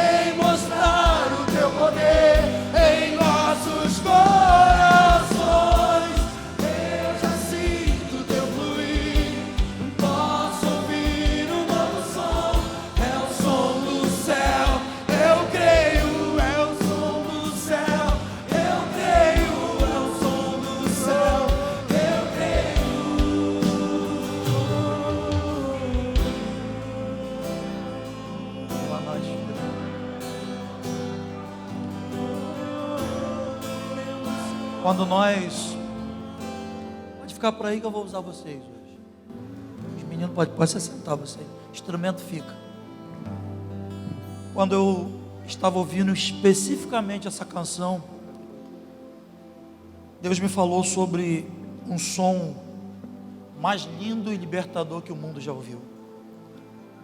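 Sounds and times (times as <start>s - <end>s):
many voices singing together: 0.0s - 37.2s
worship band playing: 0.0s - 38.4s
drum beat: 0.6s - 26.4s.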